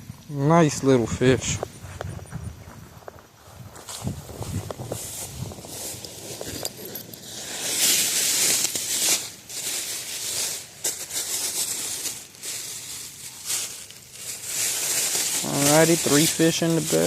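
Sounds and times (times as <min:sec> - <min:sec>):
plastic bag rustling and crinkling: 0:03.7 - 0:17.0.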